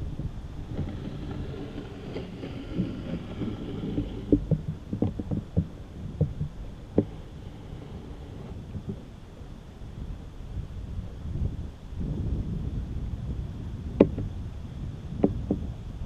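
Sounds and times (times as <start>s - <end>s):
short dull thumps: 0.0s - 9.1s, 13.9s - 14.3s, 15.2s - 15.7s
wind buffeting microphone: 0.0s - 16.0s.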